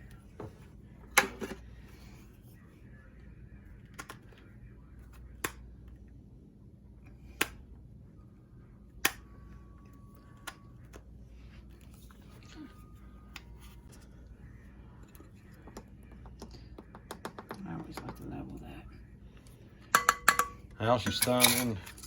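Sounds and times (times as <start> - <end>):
faint low hum: 0.0 - 22.0
kitchen utensils clicking: 20.0 - 22.0.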